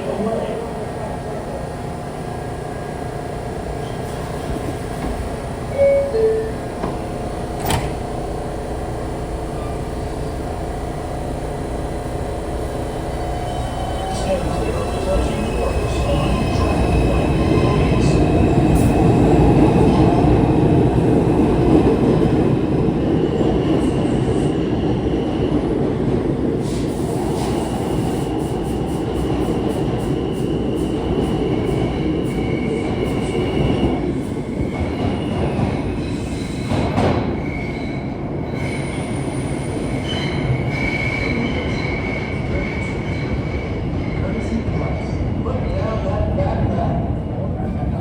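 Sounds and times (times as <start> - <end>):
subway train rumble: 0.0 - 48.0.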